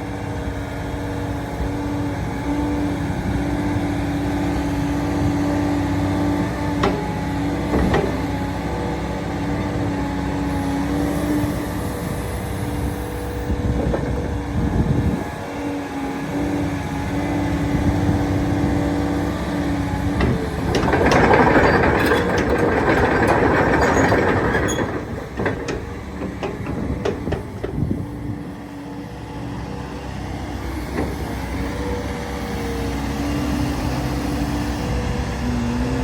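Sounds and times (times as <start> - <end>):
excavator diesel engine humming: 0.0 - 36.0
rushing rattling machine noise: 4.8 - 10.0, 16.2 - 29.0
metal clanks: 19.6 - 28.5.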